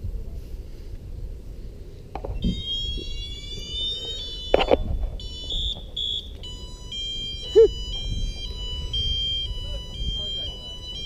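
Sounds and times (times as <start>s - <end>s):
fire alarm electronic tone: 2.4s - 11.0s.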